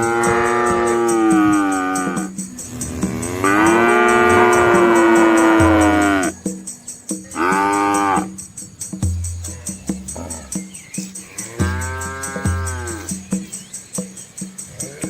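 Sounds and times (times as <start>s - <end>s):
cow mooing: 0.0s - 6.3s, 7.4s - 8.3s, 11.3s - 13.1s.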